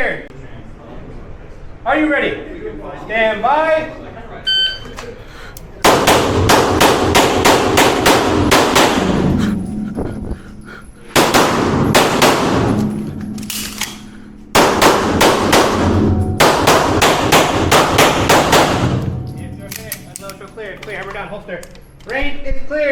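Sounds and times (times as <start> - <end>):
pistol shots echoing indoors: 5.8 - 9.6, 11.1 - 20.9.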